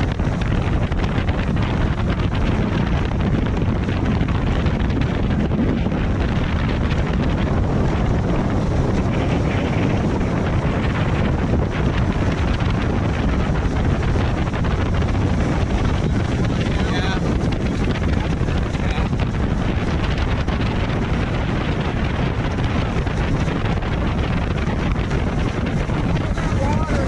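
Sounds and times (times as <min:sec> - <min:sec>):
hull on water: 0:00.0 - 0:27.0
outboard motor running: 0:00.0 - 0:27.0
wind buffeting microphone: 0:00.0 - 0:27.0.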